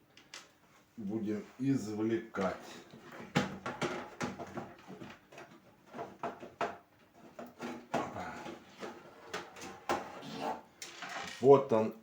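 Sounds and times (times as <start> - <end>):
power supply knocking and scraping in case: 3.0 - 10.4.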